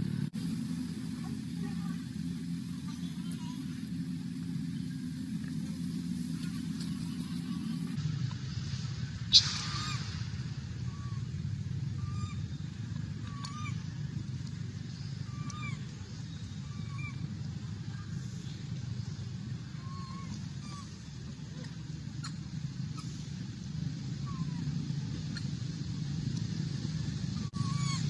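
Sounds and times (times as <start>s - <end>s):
steady low rumble: 0.0s - 28.0s
baby monkey crying: 13.3s - 13.8s, 15.3s - 15.8s, 19.8s - 21.0s, 27.5s - 28.0s.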